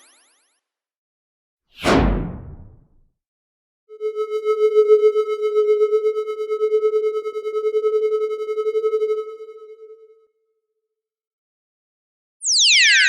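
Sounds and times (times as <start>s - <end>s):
electronic energy whistle: 12.4s - 13.0s.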